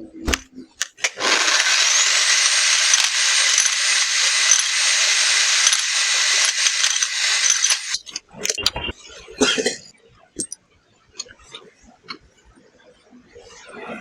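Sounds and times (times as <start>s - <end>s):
clicks: 0.0s - 8.2s
power tool motor whining: 0.3s - 8.1s.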